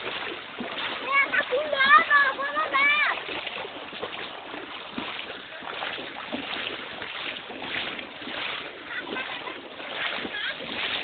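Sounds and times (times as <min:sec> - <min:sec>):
feet wading and splashing: 0:00.0 - 0:11.0
stream water running: 0:00.0 - 0:11.0.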